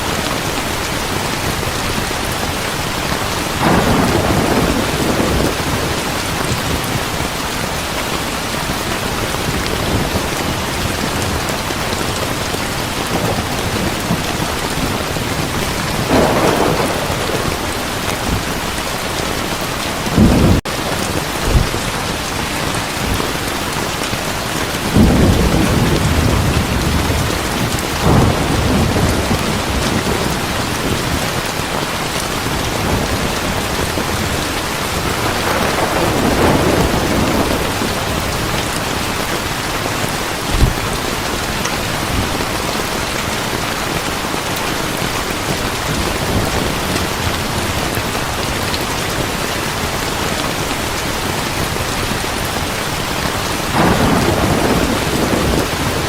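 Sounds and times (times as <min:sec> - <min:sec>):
heavy rain falling: 0:00.0 - 0:56.0
thunder rolling: 0:03.4 - 0:07.4, 0:12.2 - 0:23.5, 0:24.8 - 0:43.0, 0:53.7 - 0:56.0.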